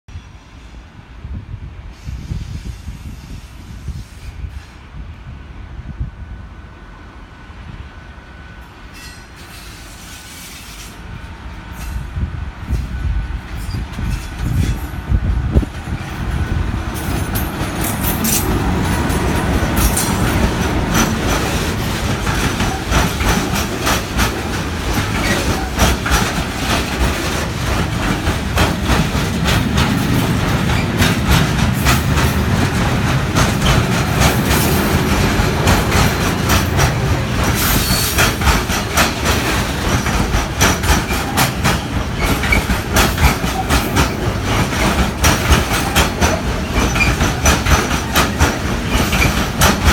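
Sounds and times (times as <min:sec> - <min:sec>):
train wheels clacking on rails: 0:12.7 - 0:49.9.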